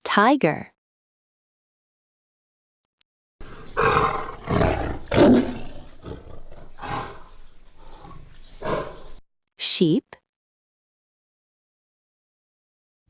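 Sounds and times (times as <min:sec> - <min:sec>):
tiger roaring and growling: 0:03.4 - 0:09.2.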